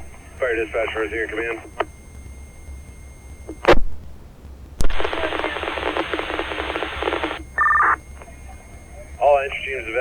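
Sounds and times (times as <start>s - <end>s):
radio scanner clicks: 1.6s - 2.0s, 4.8s - 8.3s
hissing static: 3.4s - 10.0s
two-tone beep: 7.6s - 8.0s.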